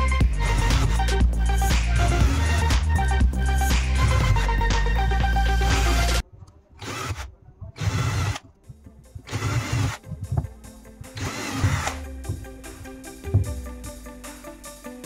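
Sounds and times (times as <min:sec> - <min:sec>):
faint background music: 0:00.0 - 0:15.0
small power tool running: 0:06.8 - 0:08.4, 0:09.3 - 0:10.0, 0:11.2 - 0:12.0.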